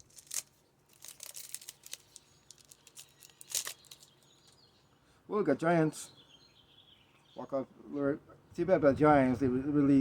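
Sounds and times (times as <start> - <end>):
wrapper crinkling: 0.0 - 4.6.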